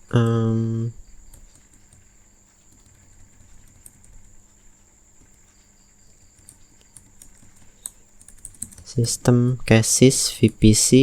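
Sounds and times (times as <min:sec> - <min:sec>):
keyboard keystrokes: 0:06.4 - 0:09.0.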